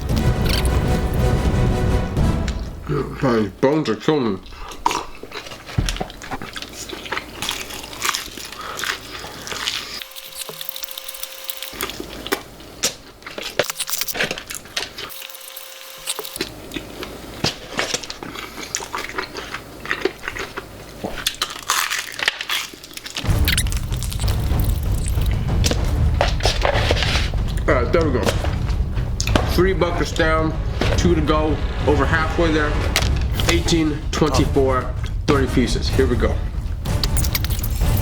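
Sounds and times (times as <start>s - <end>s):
person crunching fried chicken: 4.4s - 25.2s.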